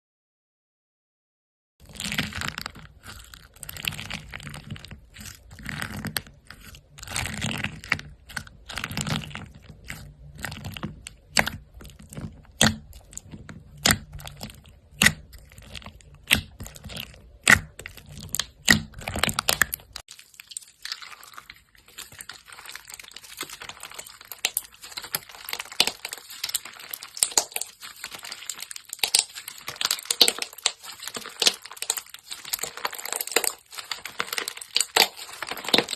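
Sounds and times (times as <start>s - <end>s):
slime crackling and popping: 1.8s - 35.9s.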